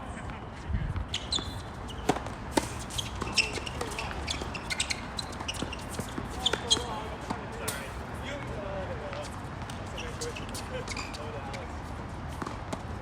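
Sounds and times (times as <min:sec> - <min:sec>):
wind rumble on microphone: 0:00.4 - 0:01.2
shoe squeaks: 0:01.0 - 0:07.9, 0:09.8 - 0:11.7
racket hitting tennis ball: 0:01.4 - 0:04.5.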